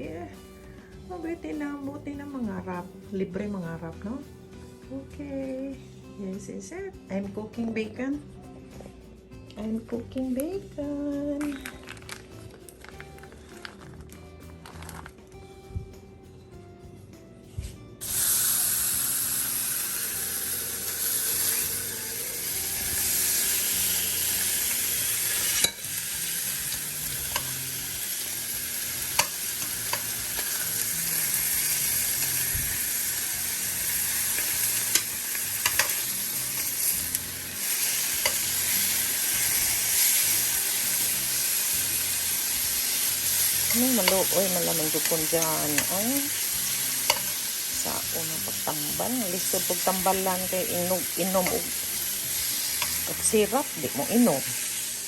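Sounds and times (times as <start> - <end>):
bacon sizzling in a frying pan: 18.0 - 55.0.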